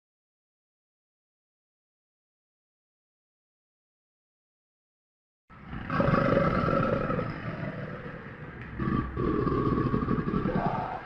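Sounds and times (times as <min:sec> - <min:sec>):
crocodile growling: 0:05.5 - 0:11.0.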